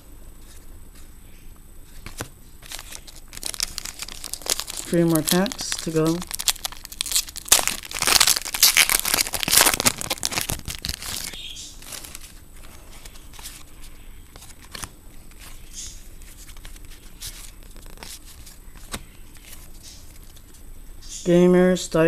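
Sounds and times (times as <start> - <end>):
wrapper tearing and crinkling: 2.6 - 12.4.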